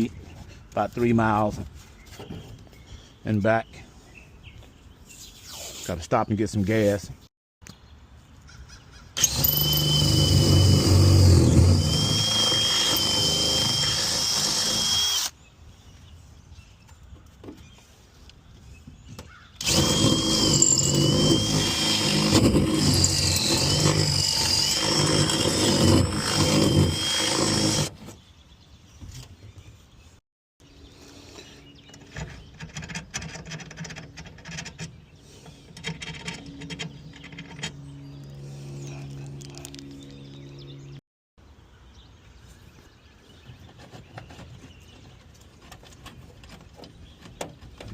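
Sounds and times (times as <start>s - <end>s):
power drill whining under load: 9.2s - 15.3s, 19.6s - 27.9s.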